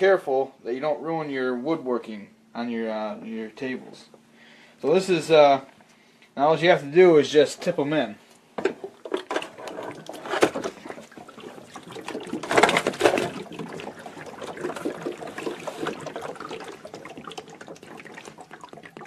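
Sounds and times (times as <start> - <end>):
water gurgling and splashing: 8.8 - 19.0.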